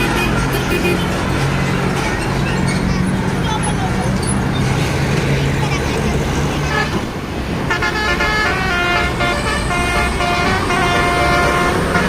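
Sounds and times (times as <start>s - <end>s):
multi-tone bus horn jingle: 0.0s - 2.4s, 6.6s - 12.0s
highway traffic noise: 0.0s - 12.0s.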